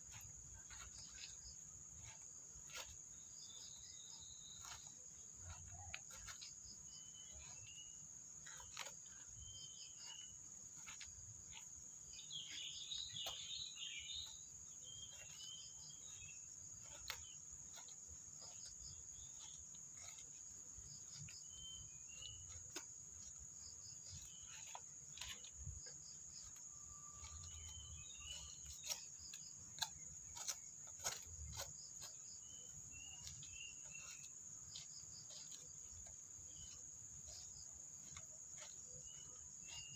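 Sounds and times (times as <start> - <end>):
small chirps: 0.0 - 39.9.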